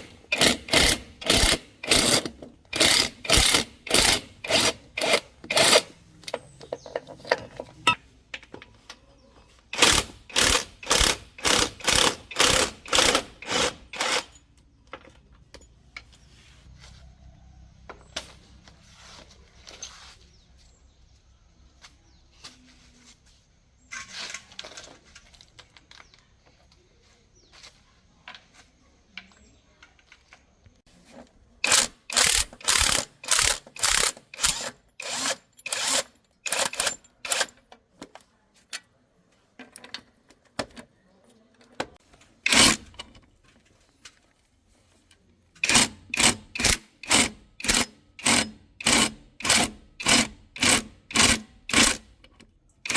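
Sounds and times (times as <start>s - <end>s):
sharp hand-tool strokes on metal: 0.0s - 5.9s, 9.8s - 14.3s, 31.6s - 37.5s, 42.4s - 42.9s, 45.6s - 52.1s
faint metal clinks and rattles: 14.3s - 16.3s, 23.9s - 26.8s.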